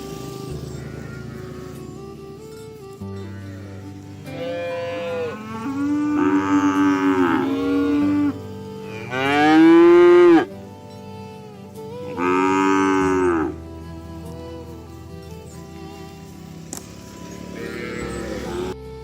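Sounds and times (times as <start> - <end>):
cattle mooing: 0.6 - 2.1, 3.2 - 10.5, 12.1 - 13.6, 17.2 - 18.8.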